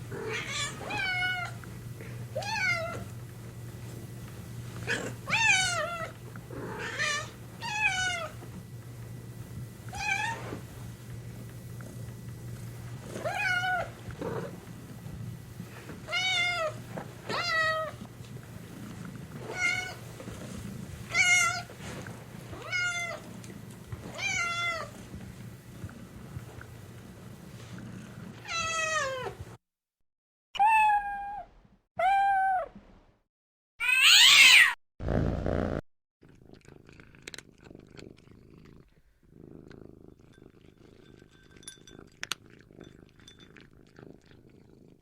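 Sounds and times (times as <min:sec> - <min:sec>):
cat meowing: 0:33.8 - 0:34.8.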